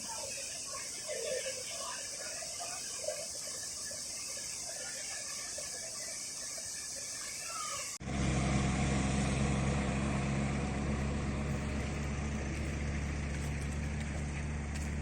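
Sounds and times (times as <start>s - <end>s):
engine humming: 8.0s - 15.0s.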